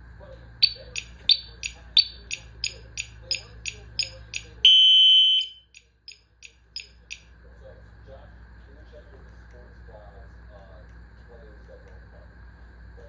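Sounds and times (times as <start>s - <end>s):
electronic beeper ticking: 0.6s - 7.2s
loud steady beep: 0.6s - 7.2s.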